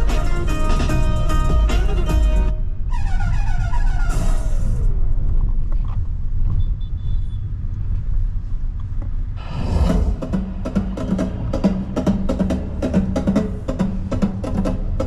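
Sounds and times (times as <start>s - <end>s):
music: 0.0s - 4.9s, 9.5s - 15.0s
engine and road rumble: 0.0s - 15.0s.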